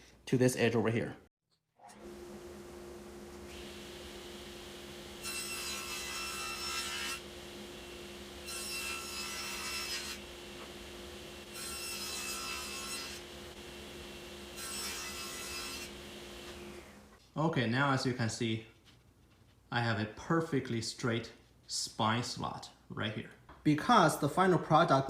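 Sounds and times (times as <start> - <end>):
table saw motor hum: 1.8 - 17.2
table saw cutting wood: 3.4 - 17.2.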